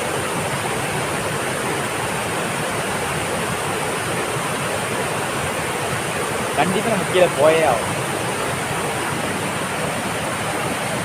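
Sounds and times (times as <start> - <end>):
waterfall roaring: 0.0 - 11.0.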